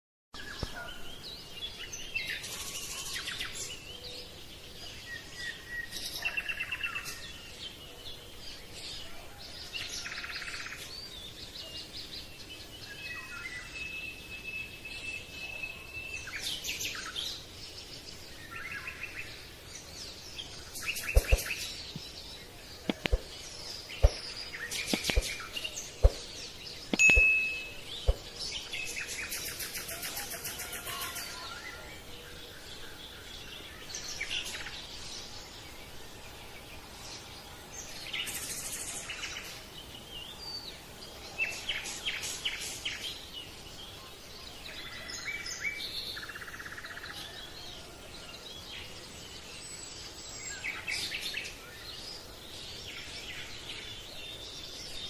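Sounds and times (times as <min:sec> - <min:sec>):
birds chirping and trilling: 0:00.4 - 0:55.0
sharp clicks: 0:22.9 - 0:23.3.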